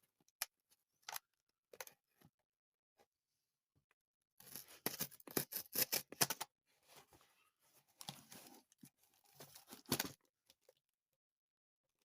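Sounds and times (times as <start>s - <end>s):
package being cut and ripped: 4.4s - 6.5s.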